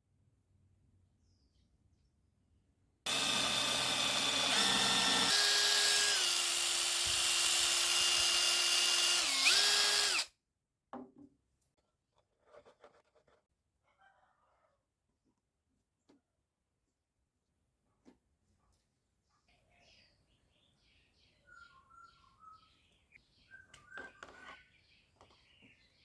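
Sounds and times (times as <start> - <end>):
small electric motor whining: 3.1 - 10.3.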